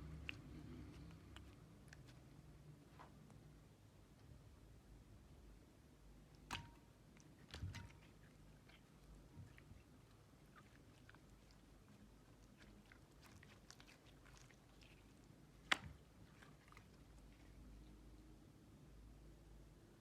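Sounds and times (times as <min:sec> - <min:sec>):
sharp slime snap: 0:06.3 - 0:08.8, 0:15.5 - 0:16.6.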